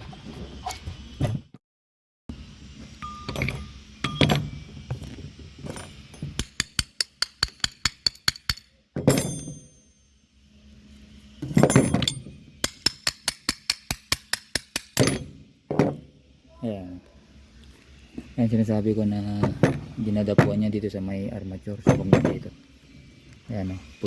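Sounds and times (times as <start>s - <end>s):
metal parts clattering: 3.0s - 4.6s, 11.4s - 12.4s
metal tools clinking: 3.0s - 4.6s, 7.2s - 10.0s, 11.4s - 12.4s, 15.0s - 16.1s
hand ratchet clicking: 12.6s - 15.1s.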